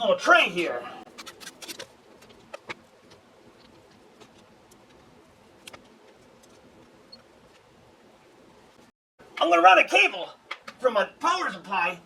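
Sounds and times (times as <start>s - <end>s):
low room noise: 0.0s - 12.0s
hard drive clicks and taps: 1.2s - 7.7s.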